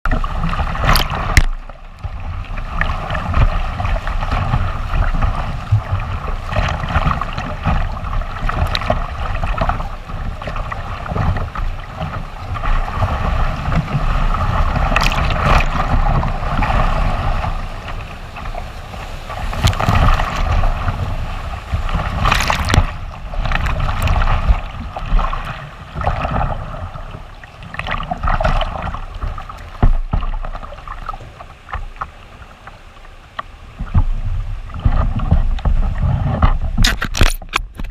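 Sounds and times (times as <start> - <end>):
wind rumbling on microphone: 0.0 - 37.9
sharp water splashes: 0.1 - 1.8, 14.2 - 17.6, 18.4 - 26.5
rushing whitewater: 0.1 - 35.2.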